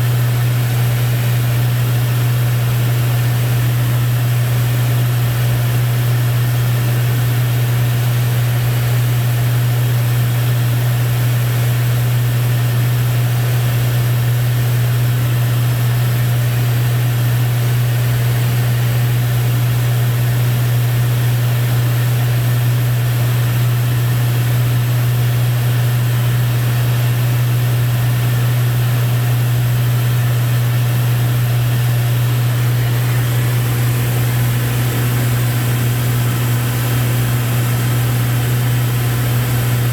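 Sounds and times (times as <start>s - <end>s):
aircraft engine and propeller drone: 0.0s - 39.9s
airflow hiss: 32.6s - 39.9s.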